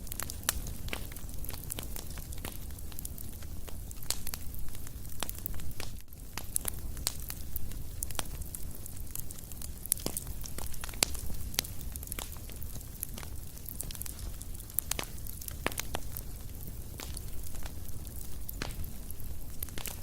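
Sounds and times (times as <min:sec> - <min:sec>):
fire crackling: 0:00.0 - 0:20.0.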